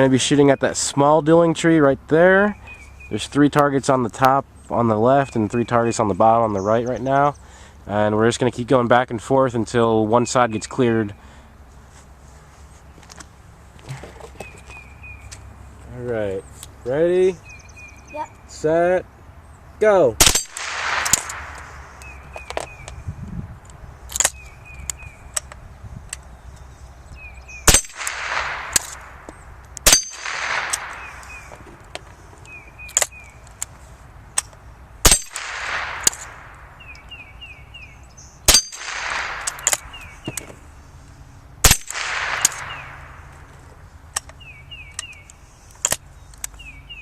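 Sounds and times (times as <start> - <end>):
rifle shots: 20.2 - 22.0, 27.6 - 31.4, 35.0 - 36.7, 38.5 - 40.0, 41.6 - 43.3
rifle reloading clicks: 20.2 - 22.7, 24.1 - 26.7, 29.8 - 31.4, 34.4 - 37.1, 38.5 - 40.5, 41.7 - 43.4.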